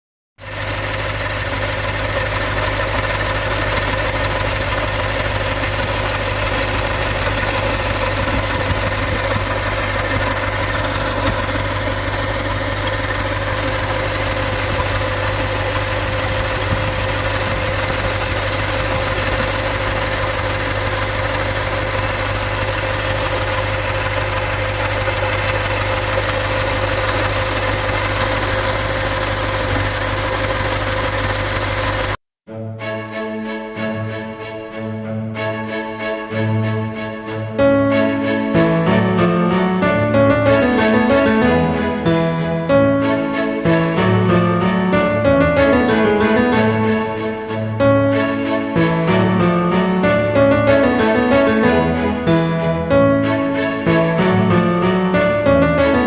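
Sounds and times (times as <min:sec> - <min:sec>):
car engine idling: 0:00.4 - 0:32.2
steady mid-pitched whine: 0:00.6 - 0:32.2.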